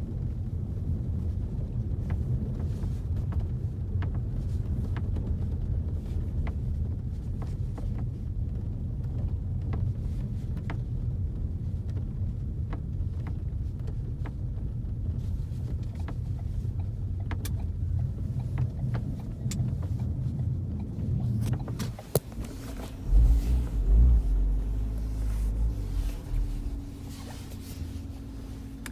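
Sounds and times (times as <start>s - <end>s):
road and engine rumble: 0.0s - 28.9s
creaks and clicks: 15.8s - 27.8s.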